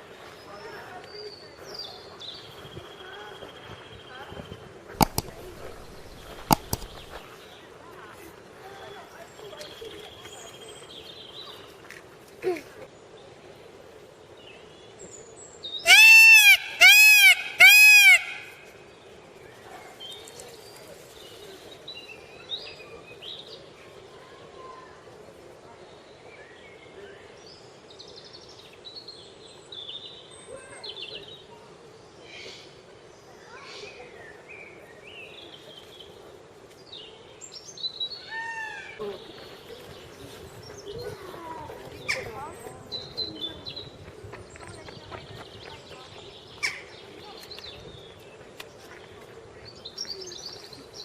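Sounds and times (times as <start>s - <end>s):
small birds chirping: 0.3s - 13.3s, 26.0s - 51.0s
birds chirping and whistling: 5.0s - 7.3s
peacock calling: 5.0s - 7.3s, 15.8s - 18.7s.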